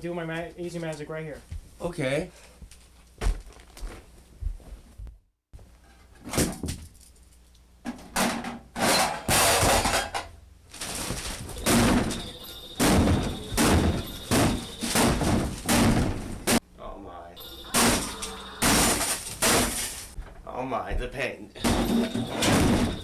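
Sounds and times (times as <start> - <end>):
loud thuds and clattering: 7.9 - 16.6, 17.4 - 23.0.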